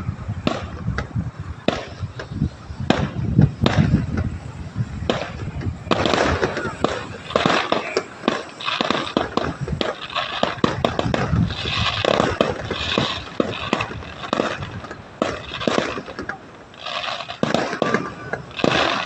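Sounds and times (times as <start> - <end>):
fireworks bangs and crackling: 0.0 - 19.0.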